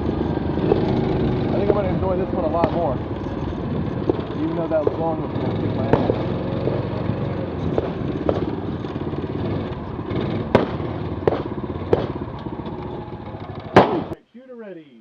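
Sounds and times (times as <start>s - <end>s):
rifle gunshots: 10.5s - 12.2s, 13.7s - 14.2s.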